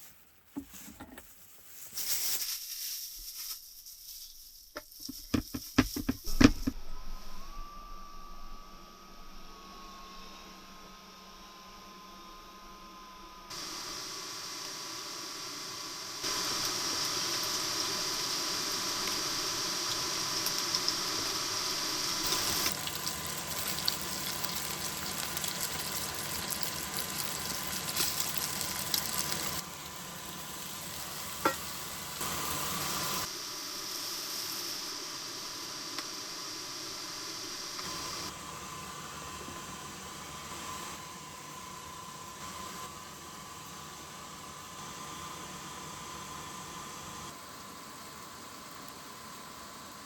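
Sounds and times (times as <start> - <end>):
sizzling hiss: 13.5 - 39.3.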